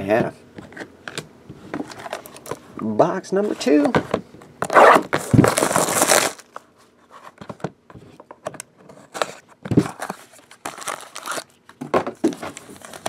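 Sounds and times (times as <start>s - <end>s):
packaging ripping: 4.7s - 6.6s, 10.6s - 11.5s
packaging crinkling and rustling: 4.7s - 6.7s, 9.0s - 13.0s.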